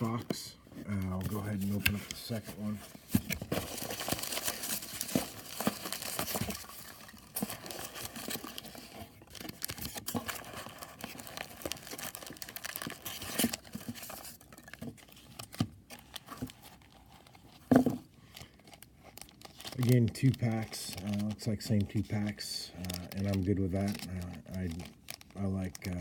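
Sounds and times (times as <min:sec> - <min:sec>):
packaging tearing and crinkling: 0:03.3 - 0:17.4, 0:18.4 - 0:26.0.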